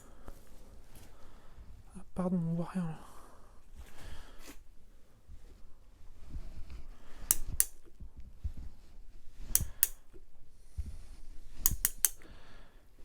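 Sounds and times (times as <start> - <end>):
ratcheting wrench clicking: 11.6 - 12.2.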